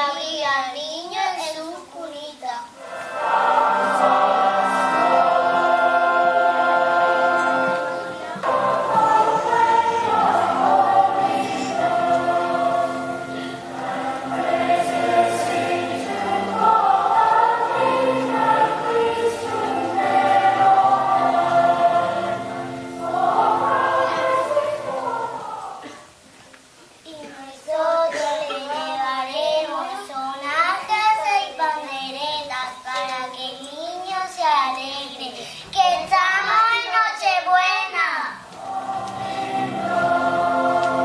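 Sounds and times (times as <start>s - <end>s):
children singing in chorus: 2.7s - 26.2s, 27.2s - 33.4s, 38.3s - 41.0s.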